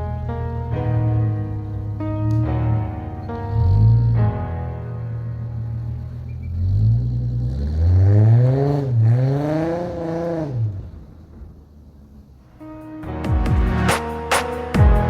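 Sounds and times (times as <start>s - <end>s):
car engine revving: 0.0s - 12.6s.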